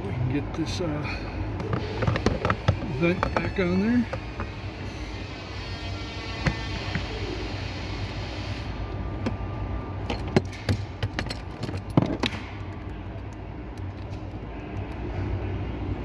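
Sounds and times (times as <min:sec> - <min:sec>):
steady low hum: 0:00.0 - 0:16.0
plastic trim parts clicking and knocking: 0:01.6 - 0:04.6.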